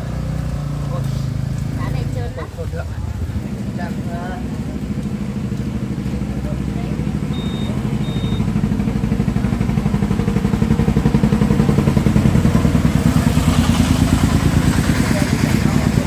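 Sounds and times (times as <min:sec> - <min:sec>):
small engine running: 0:06.2 - 0:16.0
short high beeps: 0:07.3 - 0:08.5.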